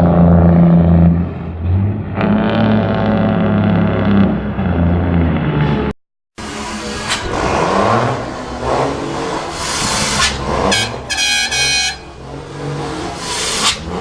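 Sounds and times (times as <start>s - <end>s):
vehicle engines revving: 0.0s - 14.0s
car horn honking: 10.6s - 12.2s.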